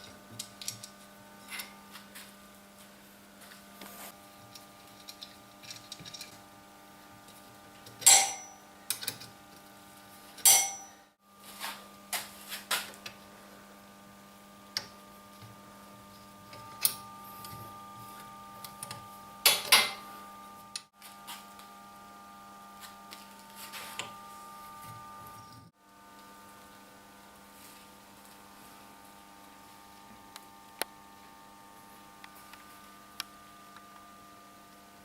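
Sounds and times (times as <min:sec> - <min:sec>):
faint steady hum: 0:00.0 - 0:35.0
metallic clanks: 0:08.0 - 0:09.1, 0:10.4 - 0:11.0.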